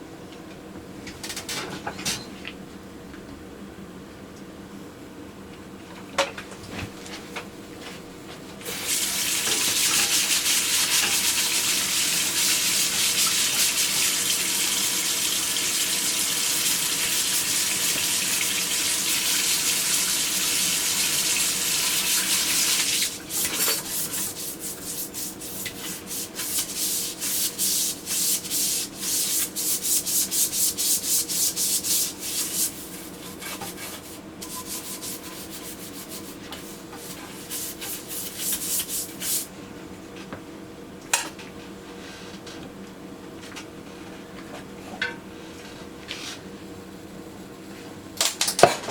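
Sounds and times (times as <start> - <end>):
faucet water running into sink: 8.7 - 23.4
brush scrubbing a sink: 8.7 - 39.5.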